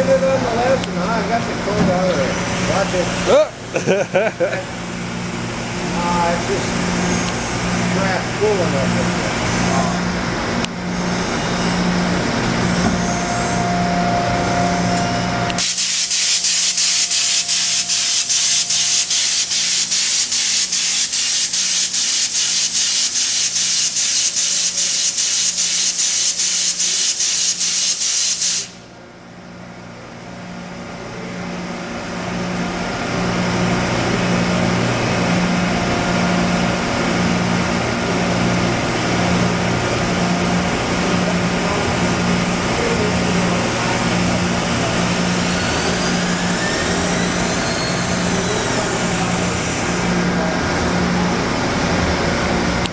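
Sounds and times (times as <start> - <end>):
high-pressure coolant spray hissing: 15.6 - 28.8
lathe humming: 34.0 - 52.9.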